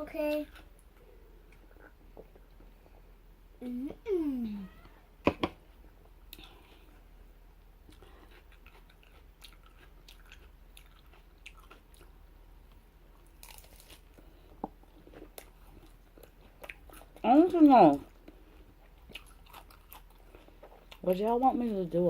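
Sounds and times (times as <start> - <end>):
person chewing food: 0.6 - 3.1, 7.8 - 17.2, 18.1 - 21.1.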